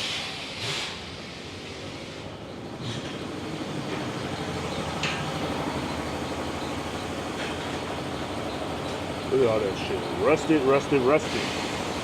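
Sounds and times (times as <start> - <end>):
short hisses: 0.0 - 1.0
vehicle engine rumble: 1.1 - 12.0.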